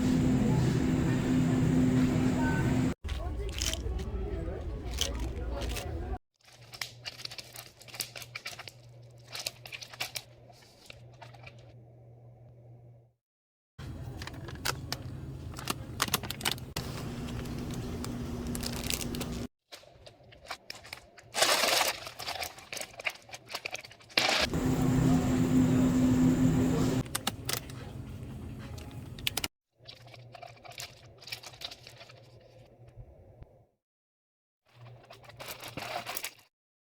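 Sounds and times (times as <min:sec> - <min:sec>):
plastic wrappers crinkling and tearing: 0:04.8 - 0:11.6, 0:14.0 - 0:24.4.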